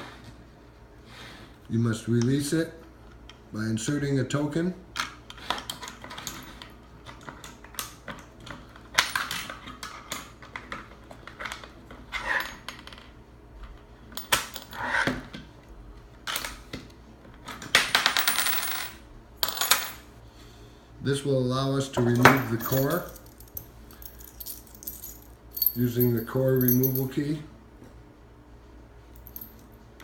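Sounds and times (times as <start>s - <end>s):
metal token dropping through lock: 22.1s - 27.1s.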